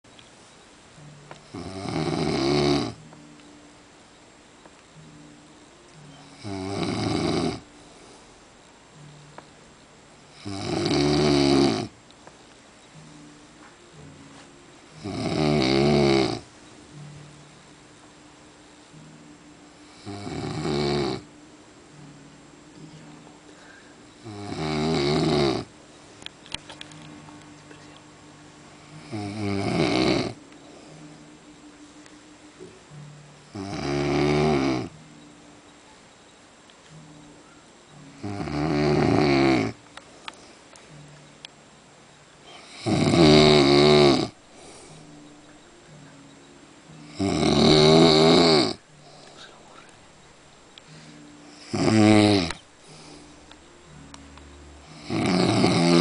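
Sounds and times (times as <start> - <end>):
man snoring: 1.5 - 3.0, 6.2 - 7.7, 10.3 - 11.9, 15.0 - 16.5, 19.9 - 21.3, 24.2 - 25.7, 28.9 - 30.4, 33.5 - 34.9, 38.2 - 39.8, 42.5 - 45.0, 47.0 - 49.8, 51.6 - 53.2, 54.8 - 56.0
soft breathing: 22.8 - 24.2, 44.5 - 45.3, 49.0 - 50.1, 50.8 - 51.6, 52.8 - 53.5.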